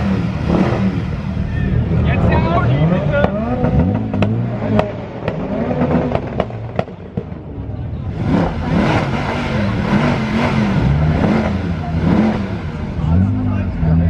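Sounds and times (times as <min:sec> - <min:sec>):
car engine revving: 0:00.0 - 0:14.0
exhaust popping and banging: 0:03.1 - 0:07.6.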